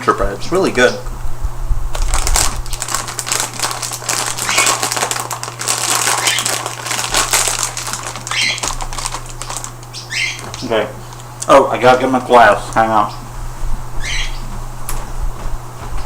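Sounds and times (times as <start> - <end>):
plastic packaging crackling: 1.9 - 13.1.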